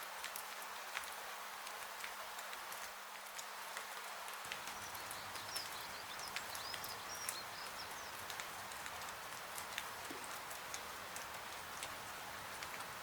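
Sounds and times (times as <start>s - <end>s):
rain hiss: 0.0s - 13.0s
bird chirping: 4.6s - 8.2s.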